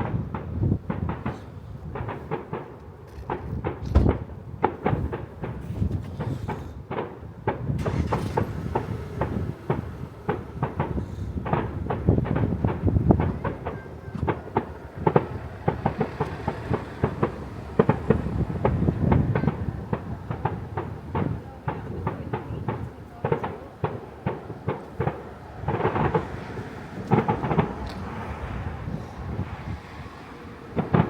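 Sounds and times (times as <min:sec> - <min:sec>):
fireworks bangs and crackles: 0:00.0 - 0:31.0
low booming rumble: 0:07.4 - 0:31.0.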